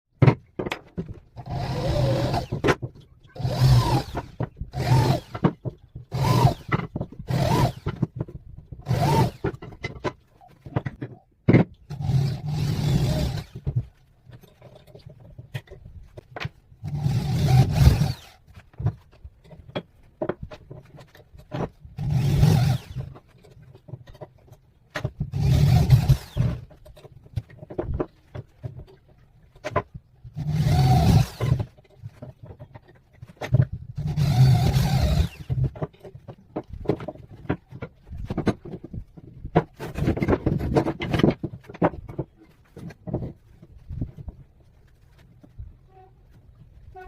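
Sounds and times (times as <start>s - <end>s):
wood clicking and knocking: 0.2s - 12.0s, 13.0s - 16.8s, 17.5s - 45.8s
power tool running: 1.4s - 2.6s, 3.4s - 5.4s, 6.1s - 7.9s, 8.8s - 9.5s, 11.9s - 13.6s, 16.8s - 18.4s, 22.0s - 23.1s, 25.3s - 26.6s, 30.4s - 31.6s, 34.0s - 35.6s.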